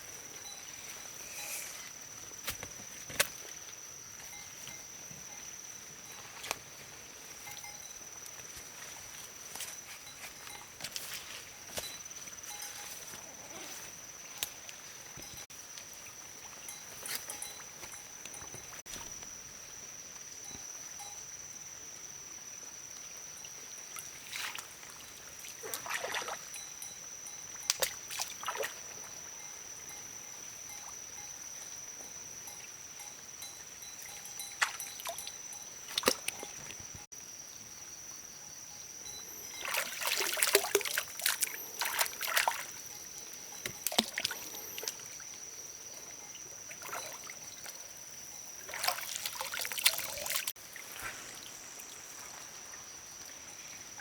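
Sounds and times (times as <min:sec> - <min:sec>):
water sloshing and splashing: 0:24.0 - 0:26.6, 0:27.7 - 0:29.2, 0:39.3 - 0:53.5.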